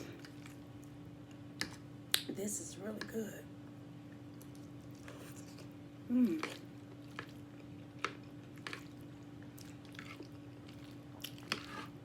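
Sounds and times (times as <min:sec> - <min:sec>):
person humming briefly: 0:06.1 - 0:06.4.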